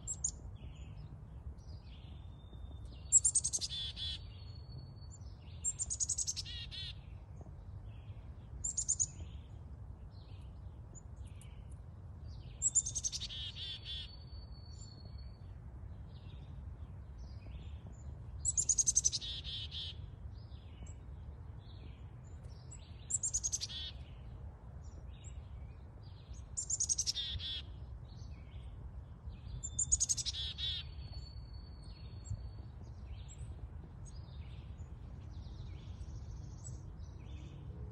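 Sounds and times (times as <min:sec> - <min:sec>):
songbird trilling: 0:12.6 - 0:14.2, 0:18.5 - 0:20.0, 0:26.6 - 0:27.6, 0:29.6 - 0:31.0.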